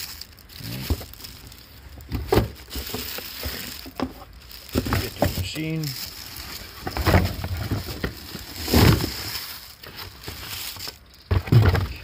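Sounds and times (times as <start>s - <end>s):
packaging rustling and crinkling: 0.0s - 12.0s.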